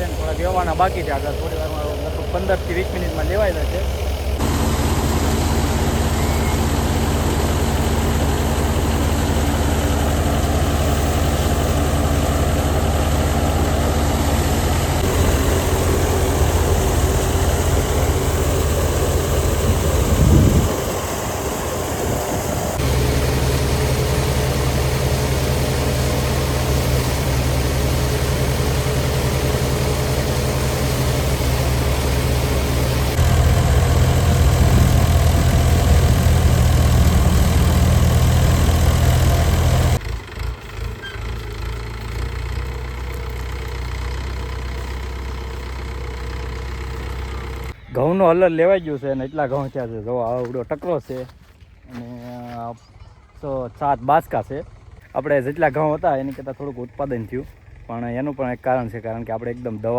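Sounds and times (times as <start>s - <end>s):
thresher machine drone: 0.0s - 47.8s.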